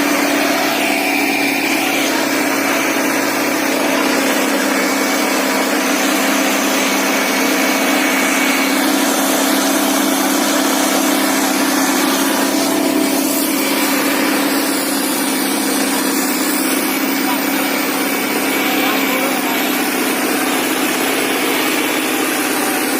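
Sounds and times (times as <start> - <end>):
tractor diesel engine under load: 0.0 - 22.9.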